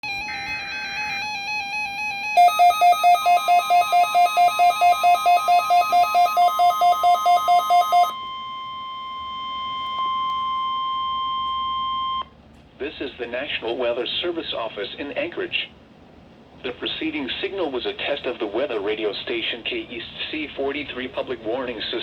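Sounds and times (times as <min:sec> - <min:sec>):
rapid electronic beeping: 0:02.4 - 0:08.1
steady alarm tone: 0:02.4 - 0:08.2.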